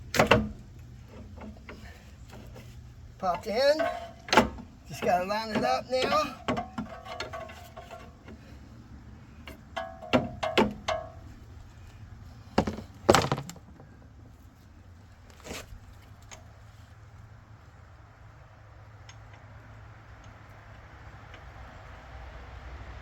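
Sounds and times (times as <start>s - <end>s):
metal clunks and knocks: 0.0s - 8.6s, 9.4s - 11.5s, 12.5s - 14.1s.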